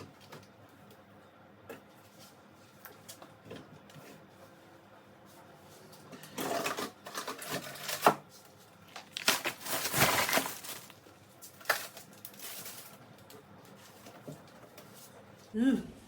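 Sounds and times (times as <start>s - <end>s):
plastic packaging crinkling: 6.5s - 14.9s.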